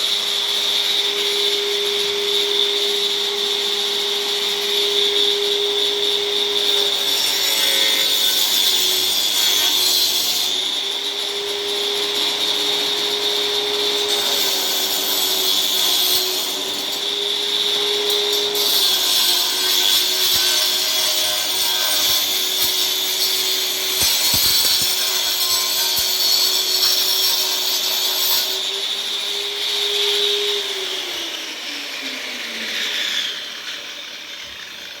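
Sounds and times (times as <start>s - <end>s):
angle grinder whining: 0.0s - 35.0s.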